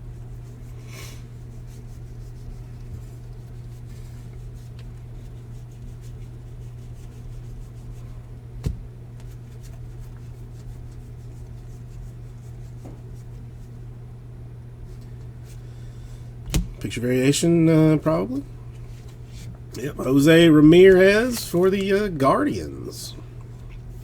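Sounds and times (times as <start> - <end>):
steady low hum: 0.0 - 24.0.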